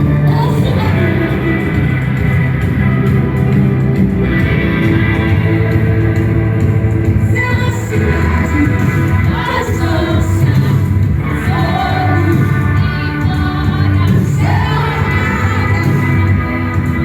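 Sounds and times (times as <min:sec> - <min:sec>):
full band playing: 0:00.0 - 0:17.0
voices singing worship song: 0:07.2 - 0:17.0.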